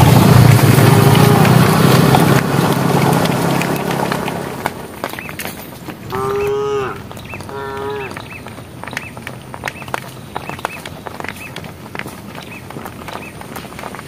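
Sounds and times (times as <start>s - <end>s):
cattle calling: 0.6s - 5.3s, 6.0s - 11.5s
small birds chirping: 4.9s - 14.0s.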